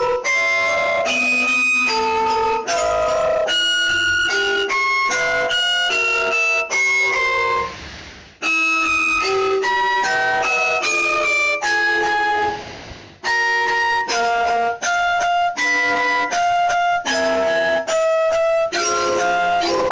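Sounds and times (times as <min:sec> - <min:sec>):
electronic alarm melody: 0:00.0 - 0:07.8, 0:08.4 - 0:12.6, 0:13.2 - 0:19.9.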